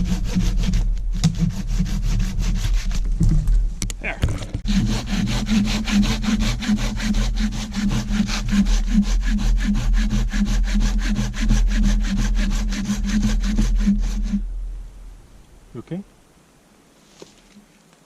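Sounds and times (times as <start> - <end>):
hand saw cutting a log: 0.0 - 3.2, 4.6 - 14.4.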